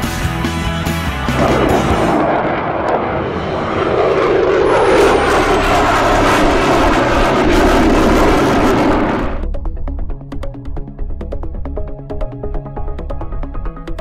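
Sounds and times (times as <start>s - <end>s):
jet engine rush: 1.2s - 9.5s
high jet whine: 1.3s - 9.6s.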